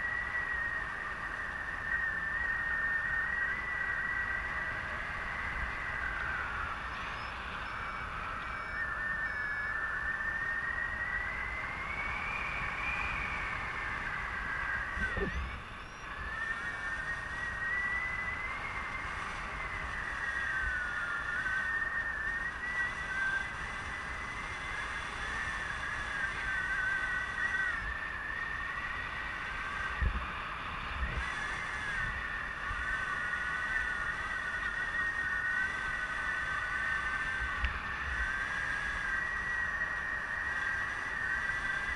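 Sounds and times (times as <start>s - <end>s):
high wind whistle: 0.0s - 41.9s
low wind buffeting: 0.0s - 41.9s.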